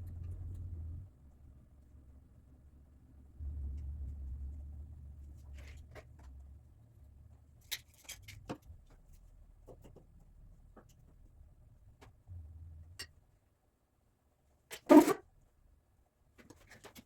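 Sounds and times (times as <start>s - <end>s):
low rumble: 0.0s - 1.1s, 3.2s - 13.4s.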